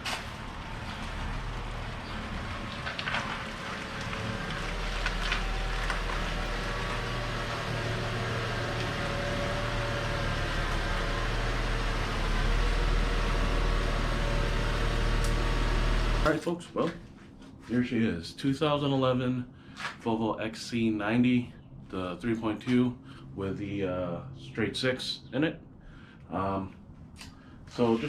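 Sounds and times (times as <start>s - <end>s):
car engine and road rumble: 0.0s - 16.4s.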